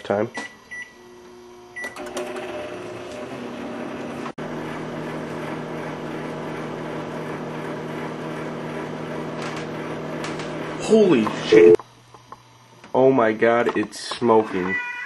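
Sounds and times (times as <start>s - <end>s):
microwave oven humming: 0.0s - 14.0s
microwave keypad beep: 0.3s - 1.0s, 1.8s - 2.1s, 11.4s - 11.8s.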